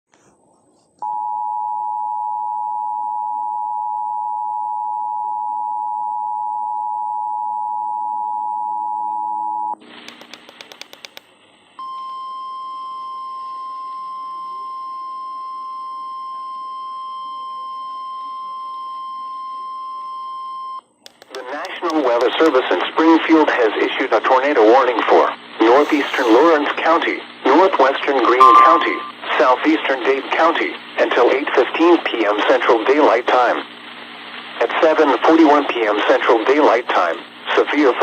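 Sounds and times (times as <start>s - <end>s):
clicks and noise: 10.0s - 11.3s, 21.0s - 22.6s
single steady warning tone: 28.2s - 29.2s
two-tone attention signal: 28.2s - 29.2s.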